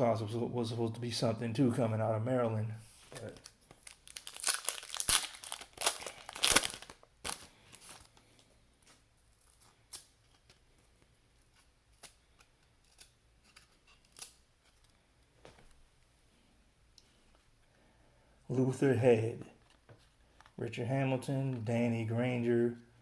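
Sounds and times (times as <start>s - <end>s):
cards rustling and clicking: 2.9s - 15.8s
wrapper tearing and crinkling: 3.1s - 8.4s.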